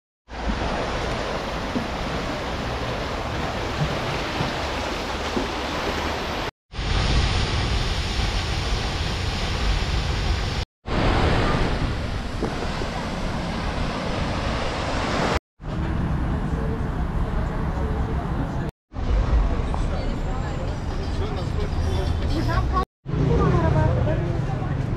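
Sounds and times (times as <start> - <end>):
rushing water with low rumble: 0.3 - 20.2.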